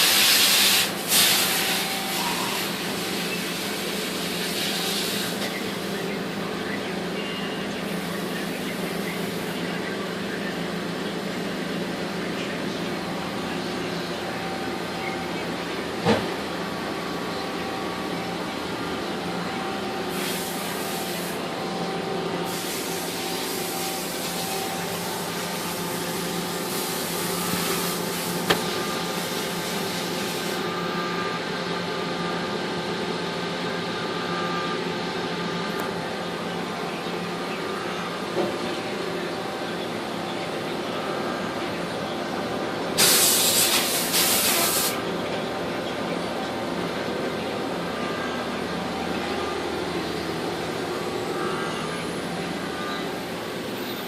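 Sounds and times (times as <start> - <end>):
machining center humming and whining: 0.0 - 54.0
hissing spray: 43.0 - 45.0.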